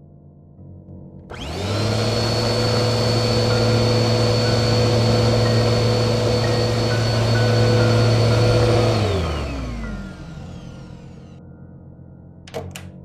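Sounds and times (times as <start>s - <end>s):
motor running with hum and whine: 1.3s - 11.4s.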